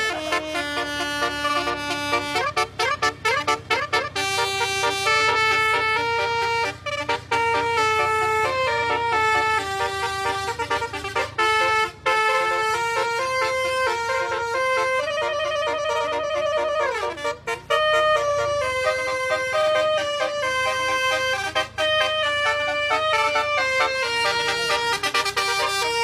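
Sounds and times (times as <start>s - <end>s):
reedy wind instrument melody: 0.0s - 26.0s.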